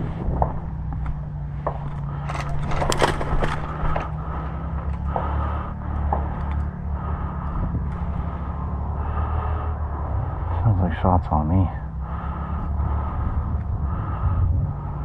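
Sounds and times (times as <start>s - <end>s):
gear scraping and rustling: 0.0s - 8.6s
steady low hum: 0.0s - 15.0s.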